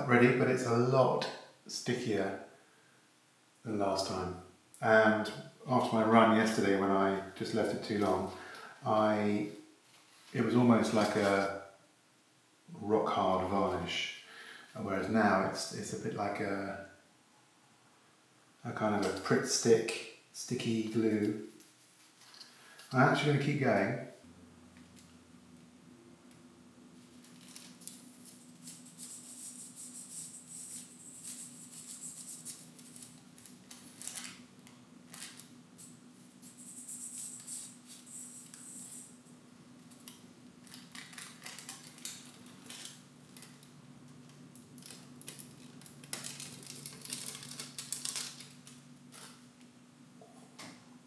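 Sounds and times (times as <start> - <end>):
steady low hum: 0.0 - 51.0
paper rustling and crinkling: 9.8 - 11.4, 21.2 - 23.0, 27.0 - 39.0, 39.8 - 49.5.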